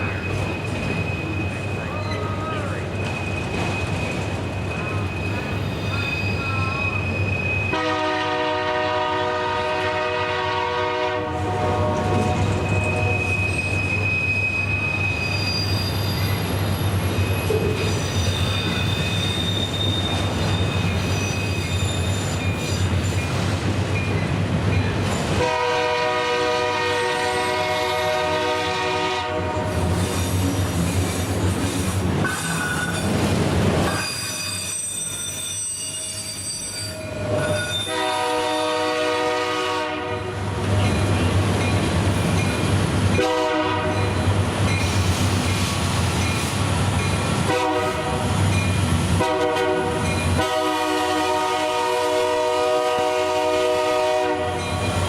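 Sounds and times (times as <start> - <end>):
high wheel squeal: 0.0 - 7.8, 12.5 - 23.3, 33.9 - 38.1
passing train rumble: 0.0 - 55.0
locomotive air horn blasts: 7.7 - 13.3, 25.4 - 29.8, 37.8 - 40.3, 43.2 - 44.0, 47.5 - 48.3, 49.2 - 54.6.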